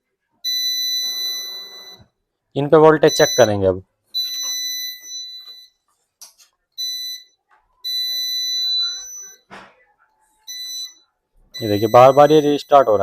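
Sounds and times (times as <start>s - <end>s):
high-pitched buzzer beeping: 0.4s - 2.1s, 10.5s - 13.0s.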